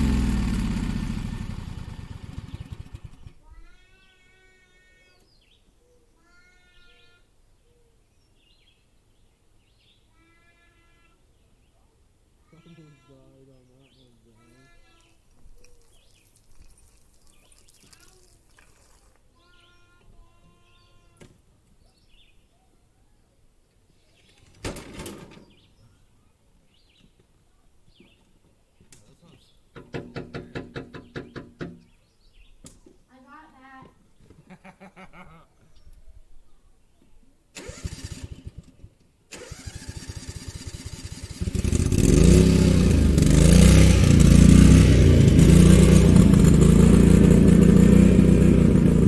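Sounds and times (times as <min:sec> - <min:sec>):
faint bird chirps: 0:09.6 - 0:18.3, 0:19.4 - 0:21.2
high bird chirps: 0:15.0 - 0:18.2.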